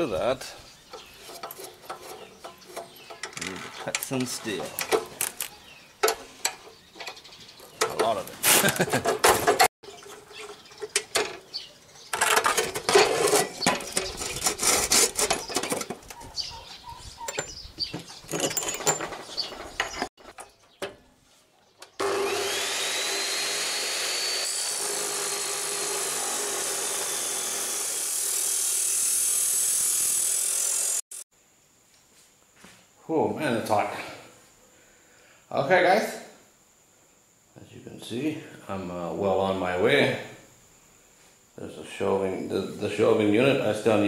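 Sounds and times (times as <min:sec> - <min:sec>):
power tool cutting steel: 0:22.0 - 0:31.2.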